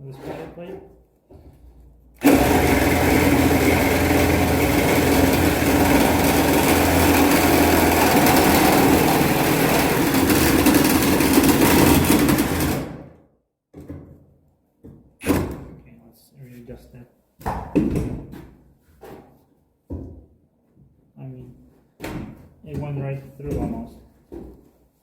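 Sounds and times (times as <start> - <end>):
reciprocating saw cutting metal pipe: 2.2 - 12.9.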